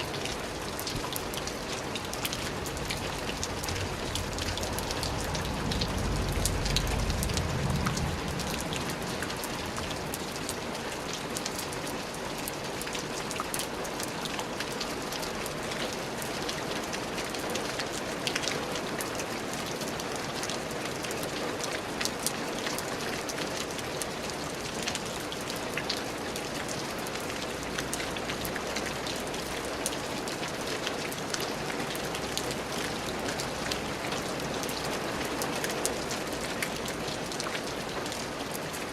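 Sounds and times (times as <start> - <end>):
steady rain falling: 0.0 - 38.9
low rumble: 3.6 - 10.0.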